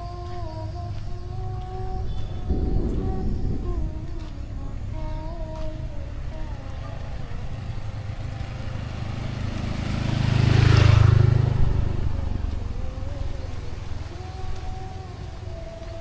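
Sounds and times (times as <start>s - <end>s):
vehicle engine passing: 0.0s - 16.0s.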